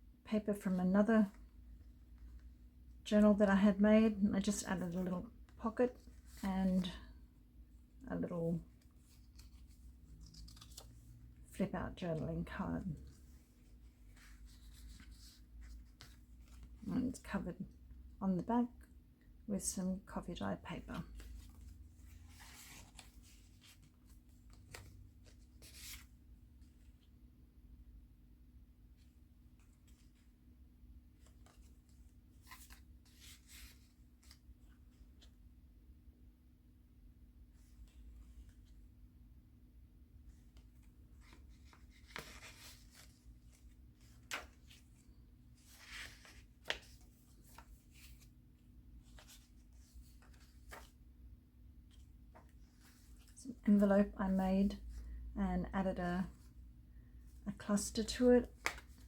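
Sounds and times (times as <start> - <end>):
paper pages rustling: 8.7 - 11.4, 12.9 - 16.9, 21.0 - 27.0, 31.1 - 35.4, 40.3 - 51.0, 58.4 - 59.0.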